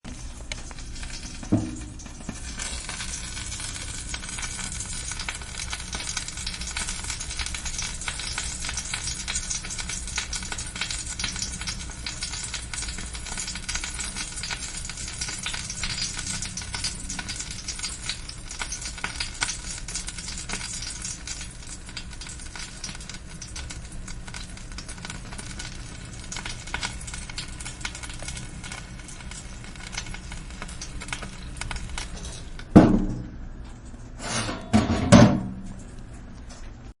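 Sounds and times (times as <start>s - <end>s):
chicken fat sizzling and popping: 0.0s - 33.9s
low thump: 1.5s - 2.0s, 32.8s - 33.3s.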